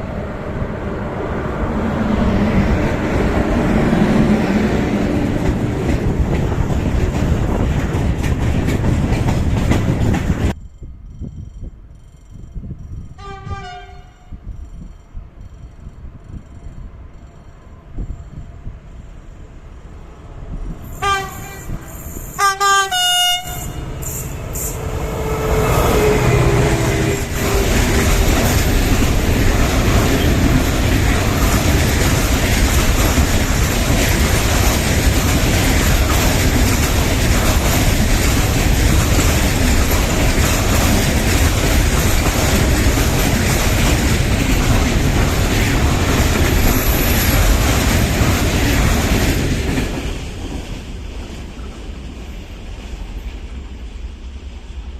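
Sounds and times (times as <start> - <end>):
train wheels rumbling on rails: 0.0 - 54.9
train horn blasts: 13.2 - 14.4, 20.9 - 28.0.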